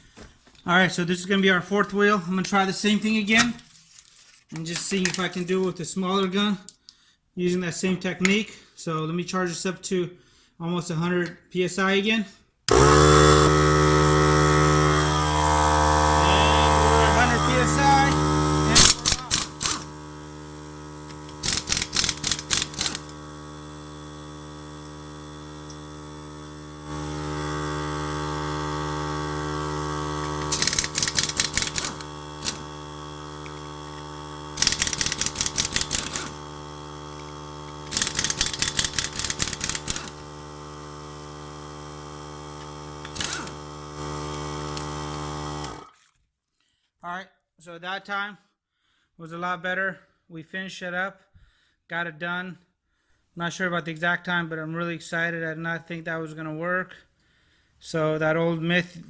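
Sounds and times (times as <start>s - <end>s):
steady compressor hum: 12.7s - 45.9s
pneumatic impact wrench hammering: 12.7s - 46.0s.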